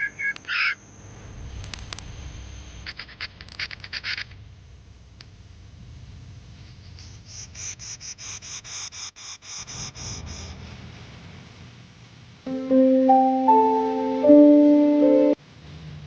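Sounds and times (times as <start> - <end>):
keyboard music with chords: 12.5 - 15.4.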